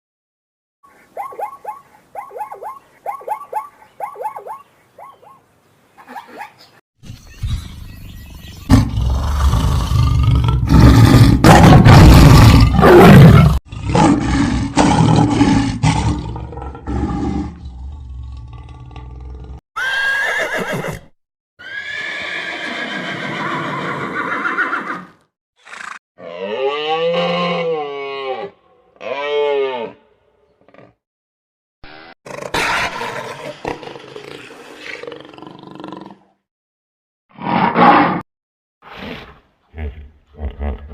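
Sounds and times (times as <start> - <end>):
pitched animal calls: 0.9 - 5.4
rising and falling animal calls: 0.9 - 5.4.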